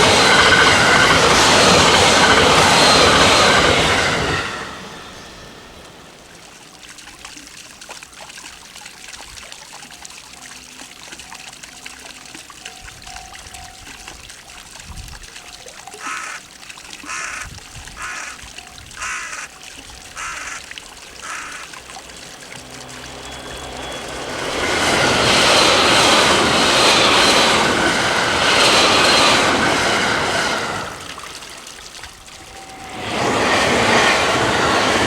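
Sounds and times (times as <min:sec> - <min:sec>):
train wheels rushing on rails: 0:00.0 - 0:06.8, 0:21.2 - 0:35.0
train whine: 0:00.0 - 0:07.1, 0:18.9 - 0:35.0
crow cawing: 0:16.0 - 0:18.4, 0:19.0 - 0:19.6, 0:20.2 - 0:21.8.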